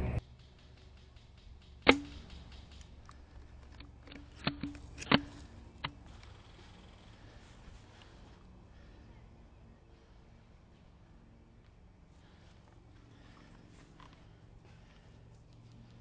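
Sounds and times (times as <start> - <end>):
airsoft gun shots: 0.8 - 3.1.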